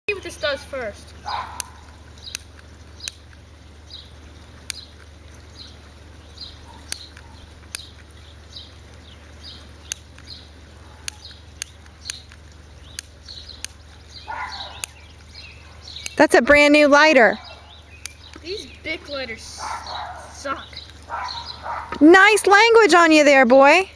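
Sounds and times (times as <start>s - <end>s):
lighter flint wheel clicking: 1.6s - 3.4s, 4.6s - 5.1s, 6.8s - 8.0s, 9.5s - 10.4s, 11.0s - 14.2s, 14.8s - 16.2s, 17.9s - 18.5s.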